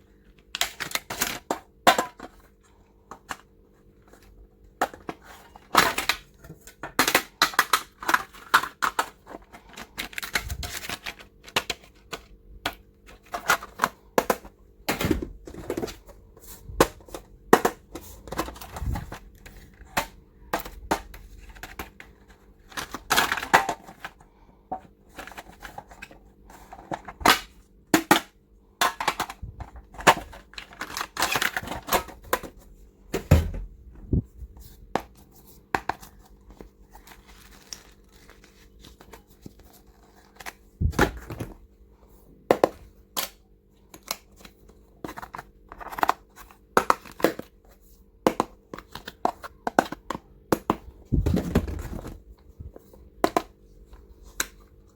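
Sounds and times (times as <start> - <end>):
faint steady hum: 0.0 - 54.9
plastic packaging crinkling and tearing: 36.4 - 40.6
heavy thumps: 51.0 - 52.2.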